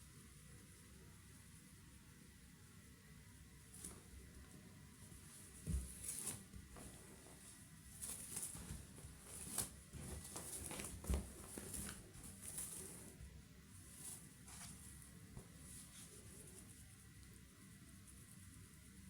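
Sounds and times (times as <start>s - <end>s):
soft thumps: 5.6s - 7.0s.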